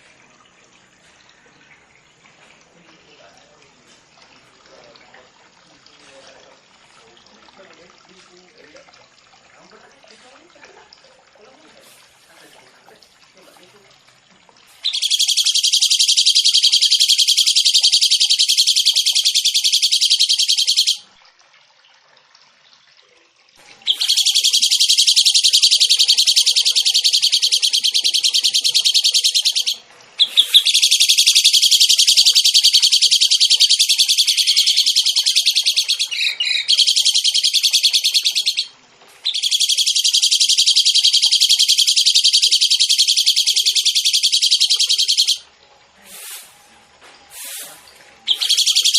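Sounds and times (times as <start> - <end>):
songbird rapid trills: 14.7 - 21.0, 23.8 - 45.4, 47.3 - 48.9.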